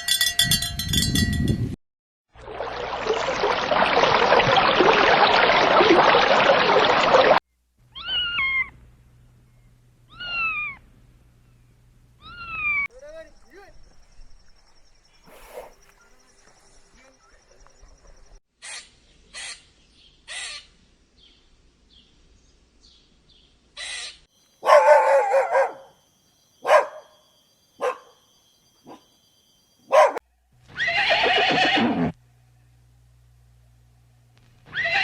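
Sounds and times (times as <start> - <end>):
animal calls: 7.9 - 8.8, 10.1 - 10.8, 12.2 - 13.7.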